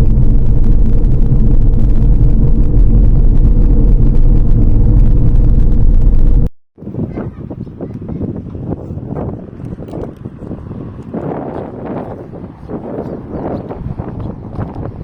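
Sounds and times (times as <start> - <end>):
road noise: 0.0 - 6.5
vehicle engine rumble: 0.0 - 6.5.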